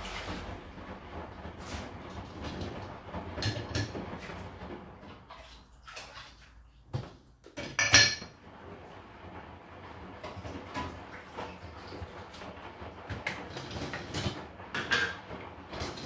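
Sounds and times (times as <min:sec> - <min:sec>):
dishes and cutlery clinking: 0:07.6 - 0:08.4.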